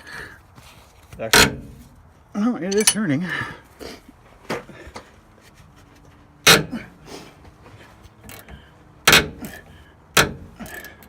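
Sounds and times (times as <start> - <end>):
sharp knocks of hand tools: 6.4 - 6.8, 8.3 - 11.0.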